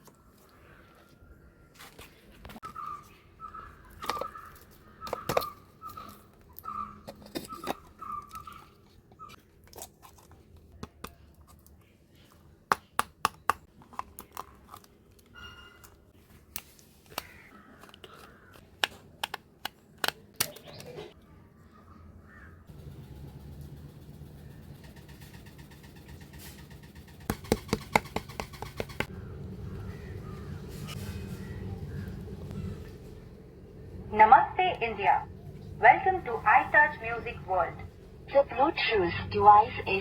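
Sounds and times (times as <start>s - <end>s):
low steady hum: 22.7s - 40.0s.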